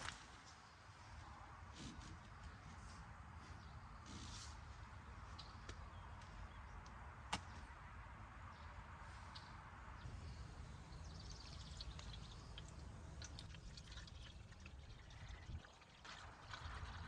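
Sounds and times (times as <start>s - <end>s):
liquid trickling: 11.0s - 17.0s.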